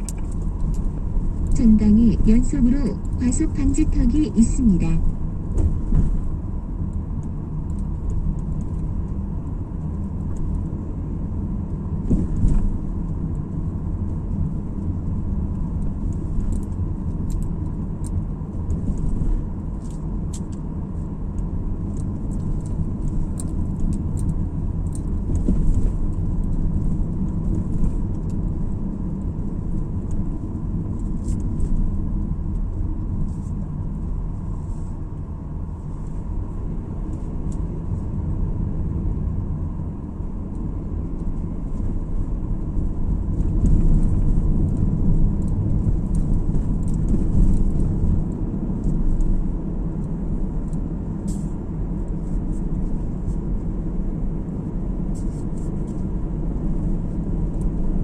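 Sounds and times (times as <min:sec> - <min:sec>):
car engine and tyre rumble: 0:00.0 - 0:58.0
small ticks and rattles: 0:12.7 - 0:33.7.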